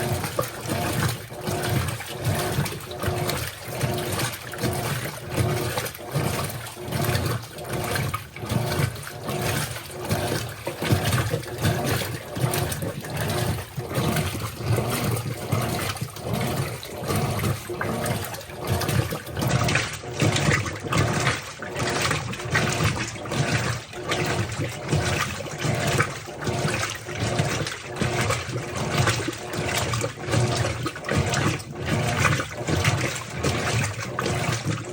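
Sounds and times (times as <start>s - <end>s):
low motor hum: 0.0s - 34.9s
water churning in washing machine: 0.0s - 34.9s.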